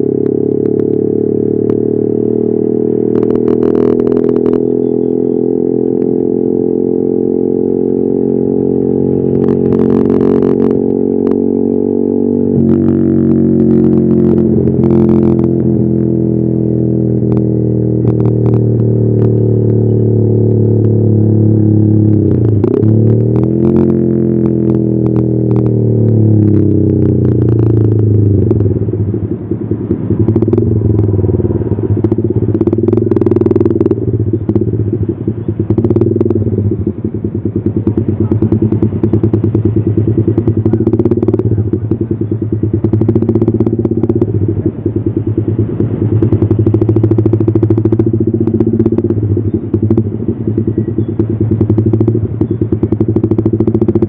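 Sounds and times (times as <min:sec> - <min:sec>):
motorcycle engine idling: 0:12.4 - 0:54.0.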